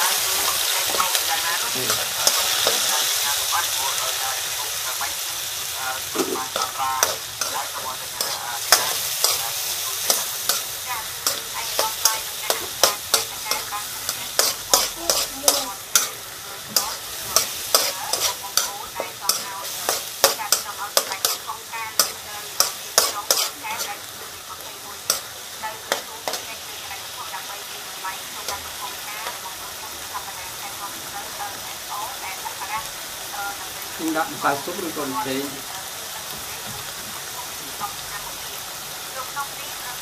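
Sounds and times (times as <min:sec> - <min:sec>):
food sizzling in hot oil: 0:00.0 - 0:40.0
spatula scraping a pan: 0:00.1 - 0:03.1, 0:06.1 - 0:24.1.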